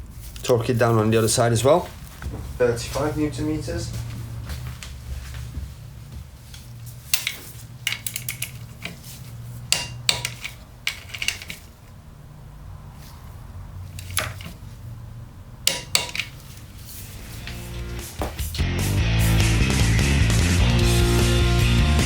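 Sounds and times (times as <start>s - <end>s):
metal hand tools clinking: 6.8s - 12.0s, 13.0s - 14.8s, 15.6s - 18.3s.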